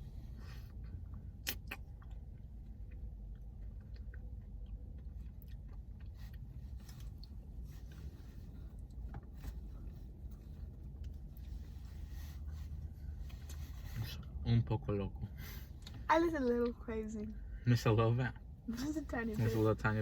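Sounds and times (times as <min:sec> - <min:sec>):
chewing and mouth sounds: 0:00.7 - 0:11.6.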